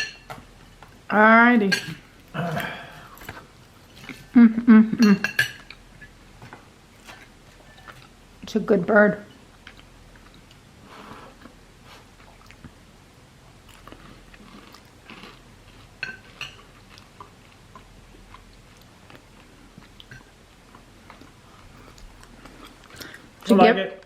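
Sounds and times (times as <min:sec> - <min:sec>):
person chewing food: 0:05.5 - 0:08.2, 0:09.4 - 0:23.4.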